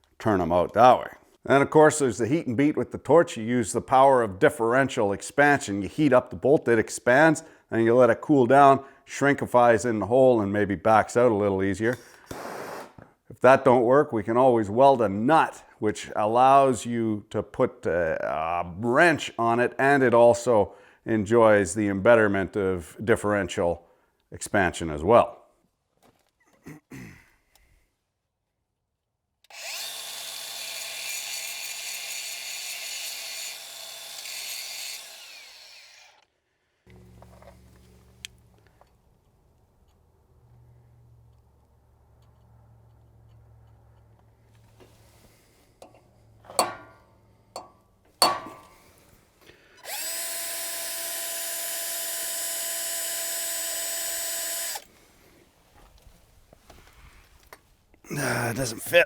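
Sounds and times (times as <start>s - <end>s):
electric power tool whining: 29.5s - 36.3s, 49.8s - 54.9s
metal tools clanking: 45.8s - 48.8s.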